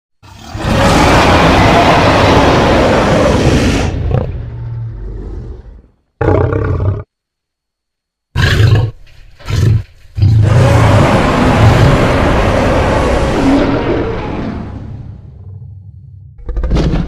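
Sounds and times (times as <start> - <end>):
creature roaring: 0.2 - 7.1, 9.5 - 15.5.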